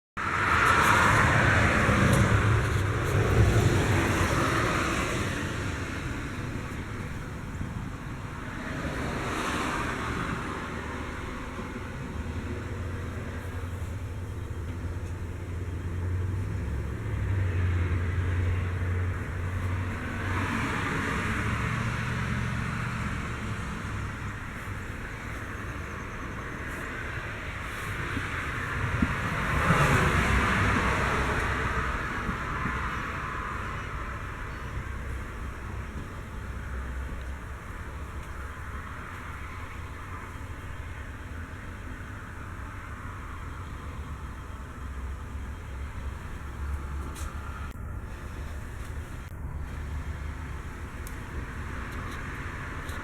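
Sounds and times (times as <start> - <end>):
cars passing: 0.2 - 53.0
low traffic rumble: 0.2 - 53.0.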